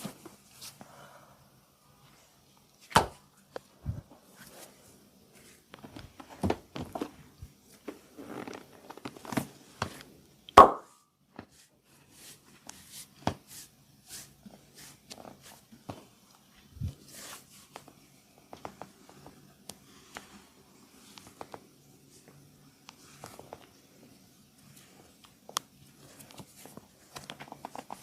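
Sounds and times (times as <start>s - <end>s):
hands rubbing and rustling: 0.0s - 0.9s, 2.0s - 10.2s, 11.3s - 28.0s
massage slaps and cracks: 2.8s - 3.7s, 8.4s - 11.5s.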